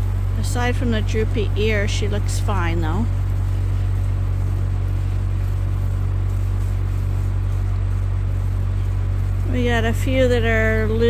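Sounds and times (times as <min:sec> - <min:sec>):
skid steer engine droning: 0:00.0 - 0:11.0.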